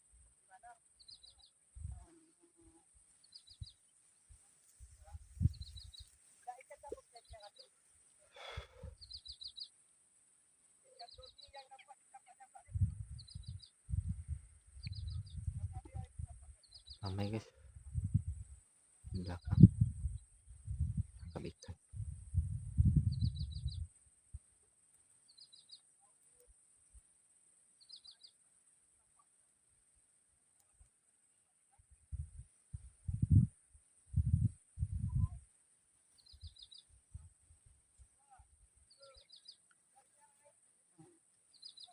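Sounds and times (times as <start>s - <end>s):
birds chirping: 8.4s - 9.8s, 16.6s - 17.4s, 36.2s - 36.9s, 38.9s - 39.7s, 41.5s - 41.9s.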